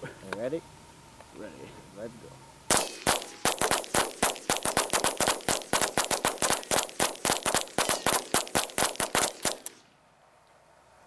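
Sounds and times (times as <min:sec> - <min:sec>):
rifle shots cracking: 0:02.7 - 0:09.8.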